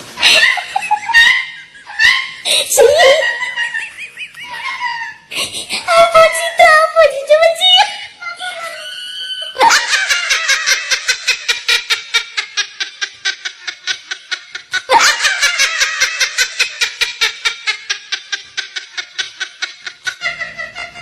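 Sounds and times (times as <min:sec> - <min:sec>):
person laughing hard: 0:00.1 - 0:06.1, 0:08.4 - 0:21.0
loud high cry: 0:08.4 - 0:10.0.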